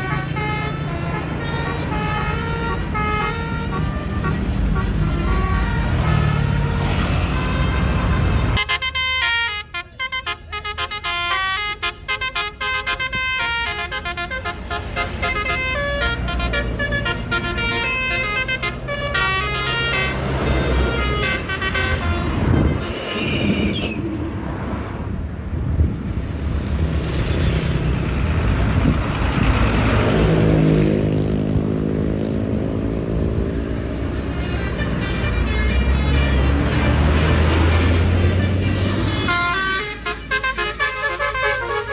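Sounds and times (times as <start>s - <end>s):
heavy vehicle passing: 0.0s - 9.4s, 12.7s - 41.9s
musical bus horn tune: 0.0s - 23.8s, 33.5s - 41.9s
engine and traffic rumble: 0.0s - 41.9s.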